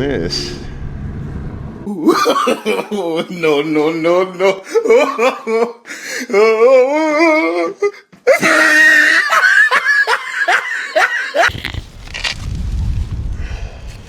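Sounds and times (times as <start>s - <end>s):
people laughing hard: 1.9s - 7.5s, 8.3s - 11.6s
wind rumbling on microphone: 11.5s - 14.0s.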